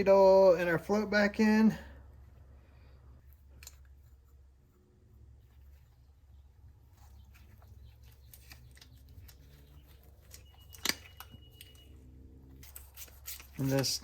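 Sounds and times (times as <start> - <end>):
low steady hum: 0.0 - 13.8
small metal parts clicking: 8.2 - 11.9.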